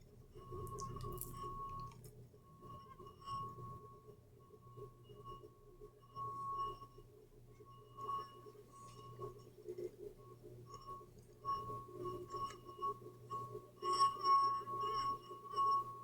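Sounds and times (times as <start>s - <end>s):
wine glass ringing tone: 10.8s - 16.0s.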